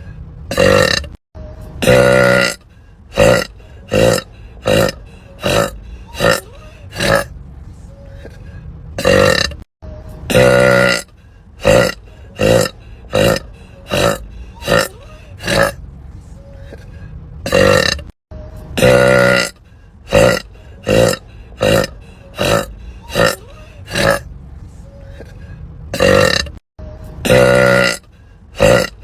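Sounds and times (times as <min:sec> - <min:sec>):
women burping: 0:01.8 - 0:02.6, 0:03.2 - 0:07.3, 0:20.1 - 0:24.2.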